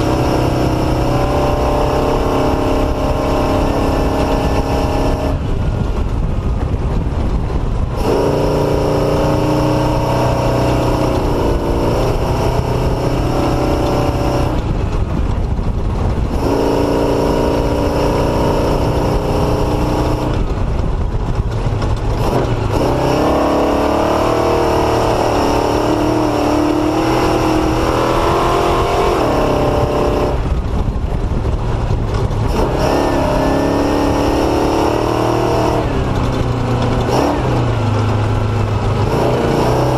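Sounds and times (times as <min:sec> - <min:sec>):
off-road motorcycle engine revving: 0:00.0 - 0:39.9.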